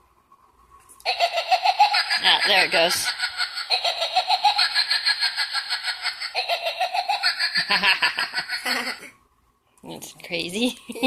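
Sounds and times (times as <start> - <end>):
toy giggle sound effect: 1.1 - 9.1.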